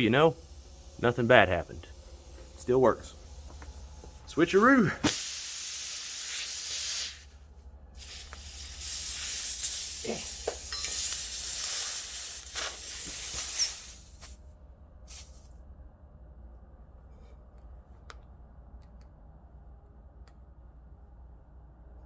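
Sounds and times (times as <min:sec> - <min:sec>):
air hissing from tire: 0:00.0 - 0:14.4, 0:15.1 - 0:15.5.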